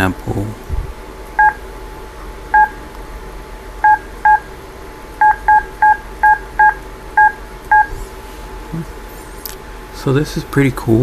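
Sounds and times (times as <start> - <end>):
phone dialing beeps: 5.2 - 7.9.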